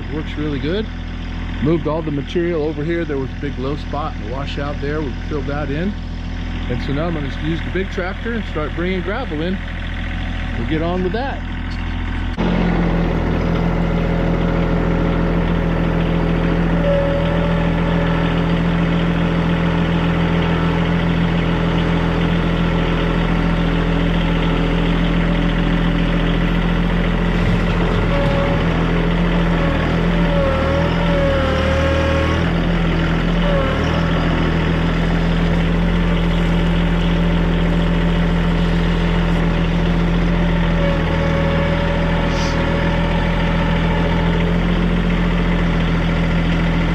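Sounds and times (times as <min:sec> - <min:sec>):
tractor diesel engine running: 0:00.0 - 0:46.9.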